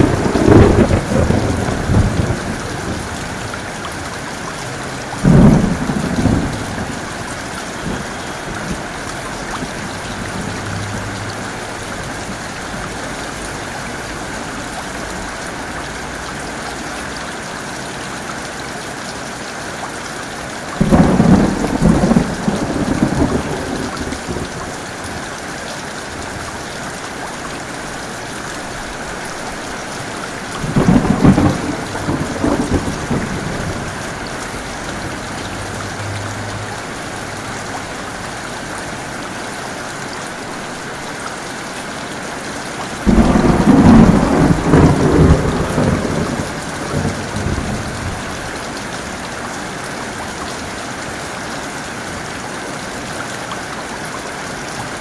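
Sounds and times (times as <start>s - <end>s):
thunderclaps rumbling: 0.0s - 4.1s, 5.2s - 13.0s, 20.8s - 24.8s, 30.0s - 38.0s, 43.0s - 48.6s
heavy rain: 0.0s - 55.0s.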